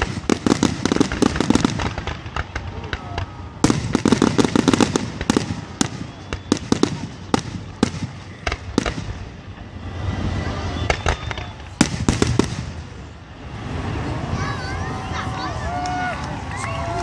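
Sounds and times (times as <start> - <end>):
fireworks cracks and bangs: 0.0 - 17.0.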